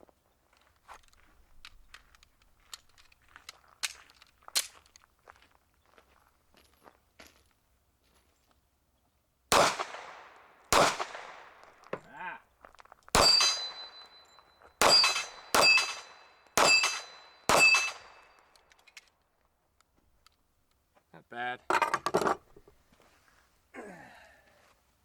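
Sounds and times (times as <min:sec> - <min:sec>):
pistol shots: 0:09.5 - 0:11.9, 0:13.1 - 0:14.2, 0:14.8 - 0:18.4
ring of struck steel target: 0:13.2 - 0:18.2.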